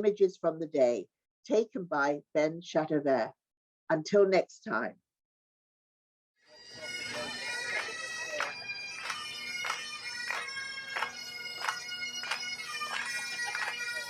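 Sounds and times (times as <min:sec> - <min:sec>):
bagpipes playing a tune: 0:06.6 - 0:14.0.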